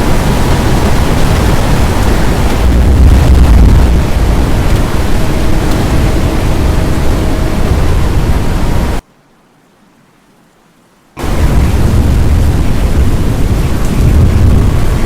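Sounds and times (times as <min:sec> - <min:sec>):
strong wind on microphone: 0:00.0 - 0:09.0, 0:11.2 - 0:15.0.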